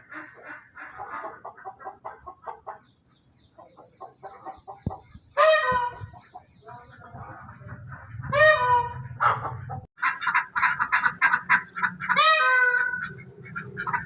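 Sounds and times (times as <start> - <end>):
loud drawn-out poultry call: 0.0 - 2.8, 5.4 - 6.3, 8.0 - 14.0
hens clucking: 0.0 - 14.0.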